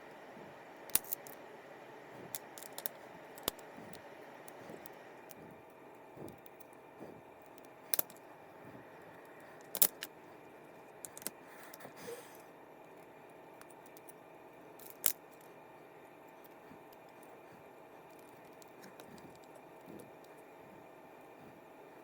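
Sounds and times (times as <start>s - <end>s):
reel parts clicking: 2.2s - 3.8s, 9.6s - 10.1s.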